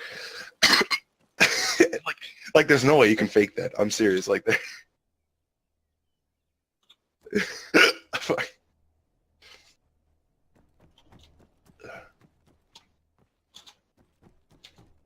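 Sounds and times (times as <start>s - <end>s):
person coughing and hiccuping: 0.6s - 2.0s, 7.4s - 8.6s.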